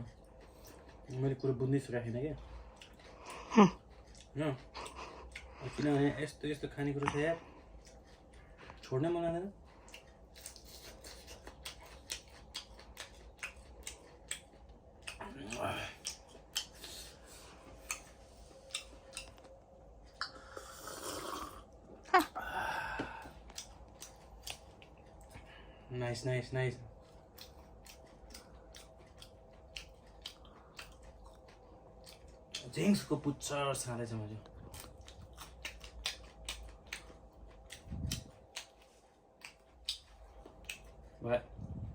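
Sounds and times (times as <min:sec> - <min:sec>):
crunching food: 0:09.7 - 0:20.6, 0:27.0 - 0:33.3, 0:34.4 - 0:41.1.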